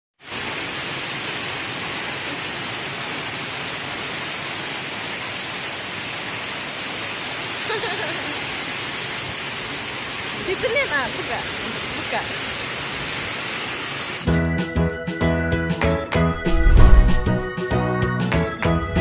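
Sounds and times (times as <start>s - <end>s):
heavy rain falling: 0.2s - 14.2s, 16.4s - 17.5s.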